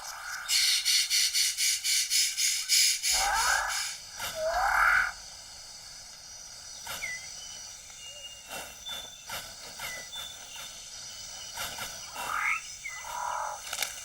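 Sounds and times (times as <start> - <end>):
harsh rasping animal calls: 3.1 - 5.2
scattered clicks: 13.6 - 14.0.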